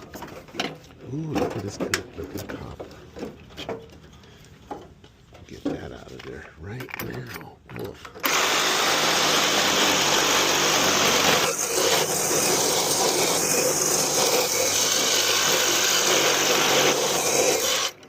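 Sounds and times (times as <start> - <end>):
power saw cutting metal: 8.2 - 18.0.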